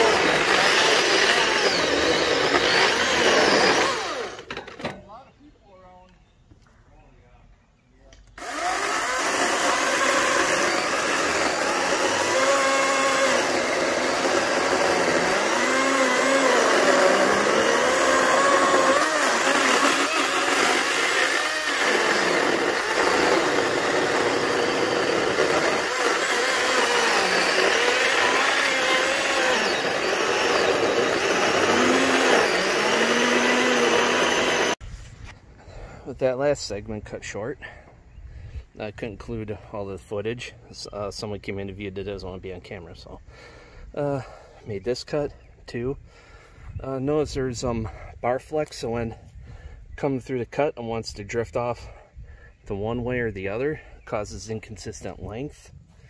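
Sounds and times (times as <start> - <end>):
electric chainsaw cutting wood: 0.0 - 4.9, 8.3 - 34.8.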